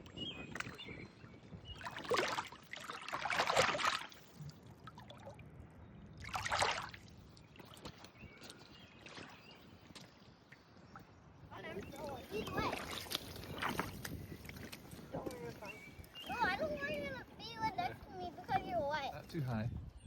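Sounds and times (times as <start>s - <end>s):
water splashing: 1.8s - 5.4s, 6.2s - 8.2s, 11.6s - 16.9s.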